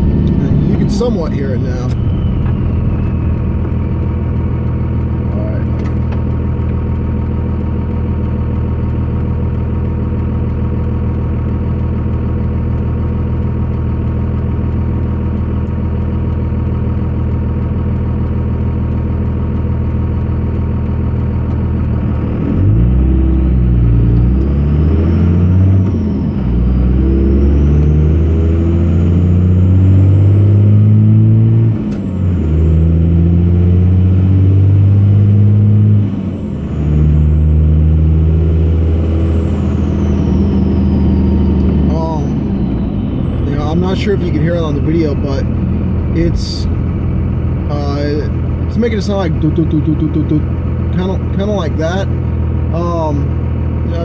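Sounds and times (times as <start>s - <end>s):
high whine: 0.0s - 7.1s, 38.2s - 54.0s
diesel engine revving: 0.0s - 54.0s.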